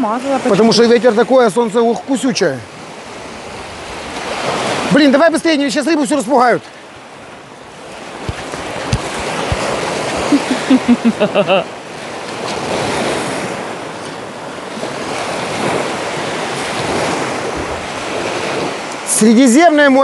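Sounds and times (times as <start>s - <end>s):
sea surf washing on shore: 0.0s - 20.0s
wind buffeting microphone: 6.8s - 10.8s, 11.8s - 19.0s.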